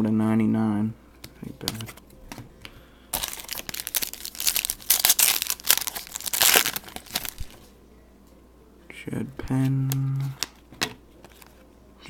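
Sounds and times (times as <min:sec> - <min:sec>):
wrapper crinkling and tearing: 0:03.1 - 0:07.6.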